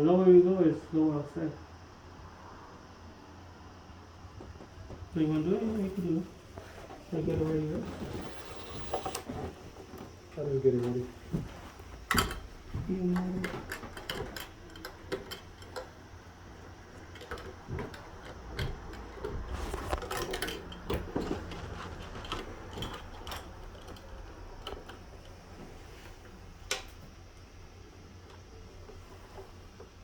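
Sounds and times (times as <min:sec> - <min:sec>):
objects clicking and knocking: 0:10.8 - 0:25.8.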